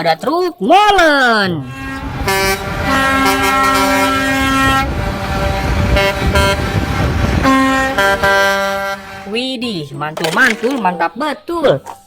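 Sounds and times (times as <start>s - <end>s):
musical vehicle horn: 1.7s - 9.4s.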